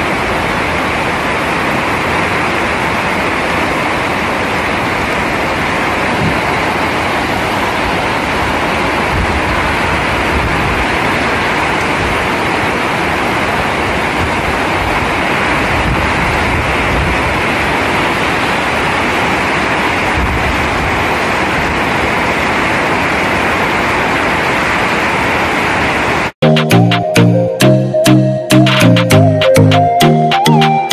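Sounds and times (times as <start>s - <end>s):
heavy rain falling: 0.0s - 30.9s.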